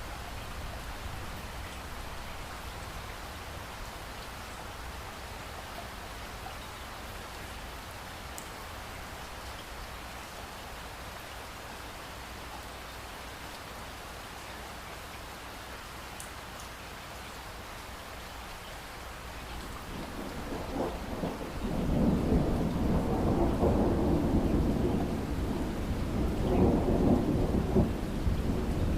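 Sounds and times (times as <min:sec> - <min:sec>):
steady rain falling: 0:00.0 - 0:28.9
rumble of thunder: 0:19.8 - 0:28.9.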